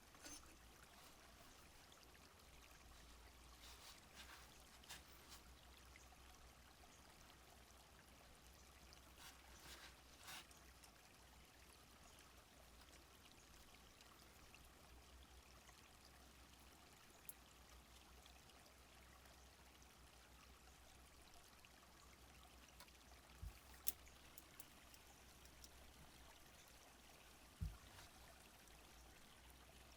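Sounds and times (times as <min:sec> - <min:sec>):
soft rustles: 0:00.0 - 0:01.9, 0:02.7 - 0:05.5, 0:09.1 - 0:10.6, 0:27.5 - 0:28.4
stream trickling: 0:00.0 - 0:29.9.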